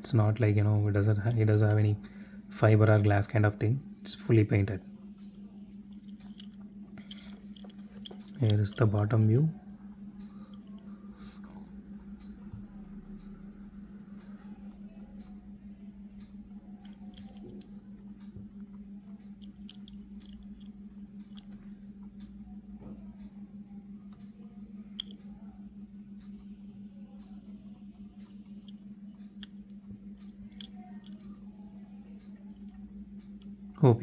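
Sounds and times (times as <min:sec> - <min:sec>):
steady low hum: 0:00.0 - 0:34.0
toy car clicks and taps: 0:16.9 - 0:17.7, 0:19.4 - 0:20.7.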